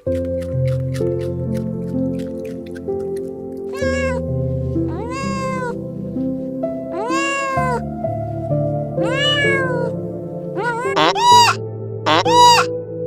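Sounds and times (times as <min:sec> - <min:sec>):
background music: 0:00.0 - 0:13.0
cat meowing: 0:03.7 - 0:04.3, 0:04.9 - 0:05.8, 0:06.9 - 0:07.9, 0:09.0 - 0:10.0, 0:10.6 - 0:12.7.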